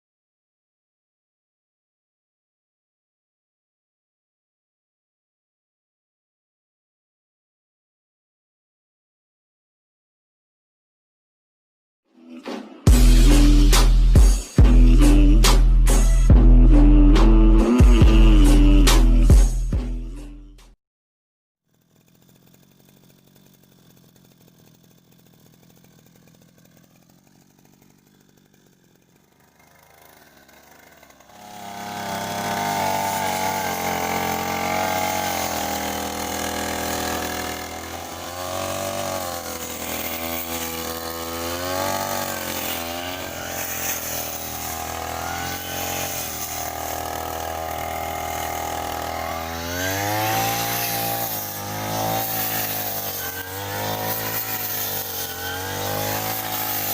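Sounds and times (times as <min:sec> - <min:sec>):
grass cutter engine revving: 0:12.2 - 0:20.4, 0:21.7 - 0:56.9.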